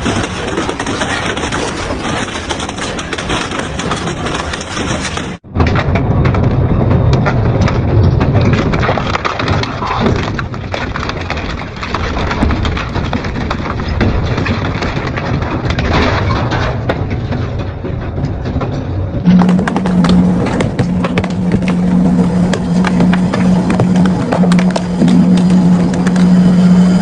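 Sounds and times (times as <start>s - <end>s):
shredder crunching material: 0.0s - 5.4s, 19.3s - 27.0s
machine low hum: 19.2s - 27.0s.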